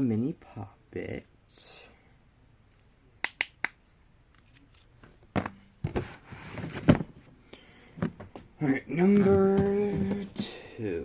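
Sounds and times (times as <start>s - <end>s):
knocks and rustling: 5.0s - 7.3s, 7.9s - 10.4s.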